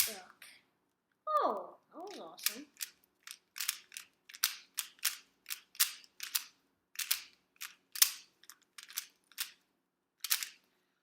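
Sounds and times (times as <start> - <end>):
plastic puzzle cube clicking: 2.1 - 9.6, 10.2 - 10.7.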